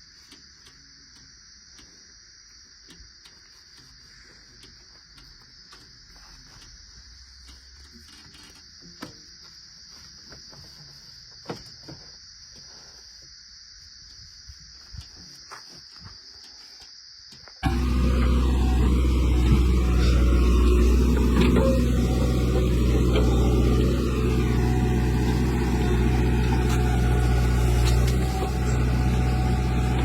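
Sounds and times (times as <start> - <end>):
faint clicks: 0.0 - 2.0
crickets chirring: 0.0 - 30.0
loud machine engine noise: 17.6 - 30.0.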